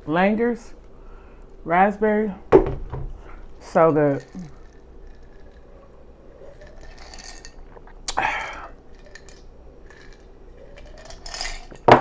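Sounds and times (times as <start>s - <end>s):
mouth smacks and clicks: 7.7s - 8.3s
breathy mouth sound: 7.7s - 8.8s.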